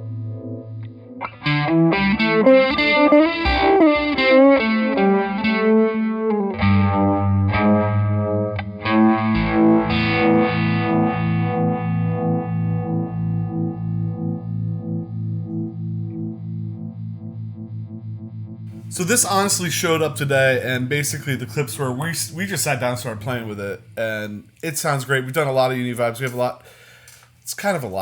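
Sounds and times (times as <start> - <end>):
overdriven electric guitar with vibrato: 0.0 - 18.9.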